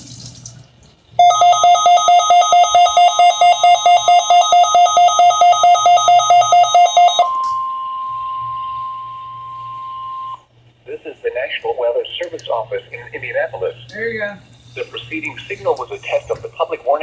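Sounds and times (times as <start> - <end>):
steady warning alarm tone: 1.2 - 10.5.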